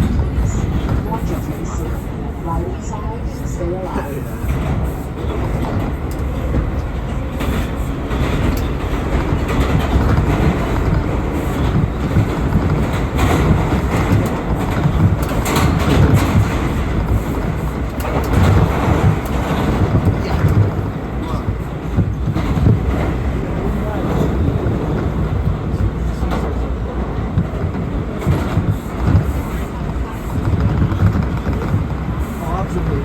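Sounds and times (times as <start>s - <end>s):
subway train rumble and wheel roar: 0.0s - 33.0s.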